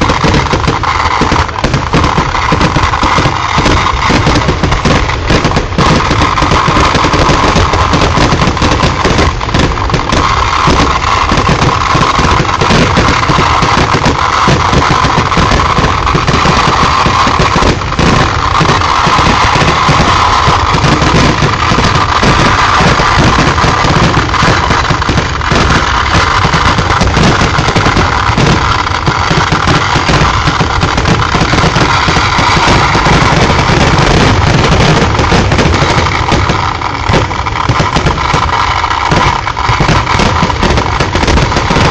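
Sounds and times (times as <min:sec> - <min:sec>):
fireworks barrage roaring: 0:00.0 - 0:41.9.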